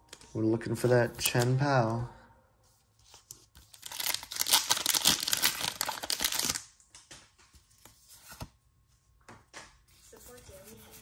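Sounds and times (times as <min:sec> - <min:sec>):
foil wrapper crinkling and tearing: 0:03.7 - 0:06.7.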